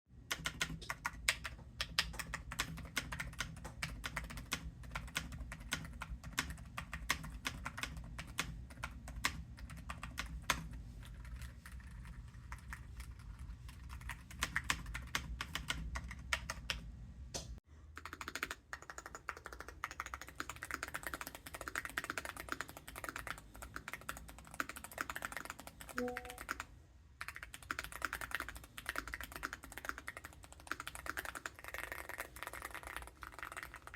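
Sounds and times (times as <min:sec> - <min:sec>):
brighter keyboard clacks: 0:18.0 - 0:33.9.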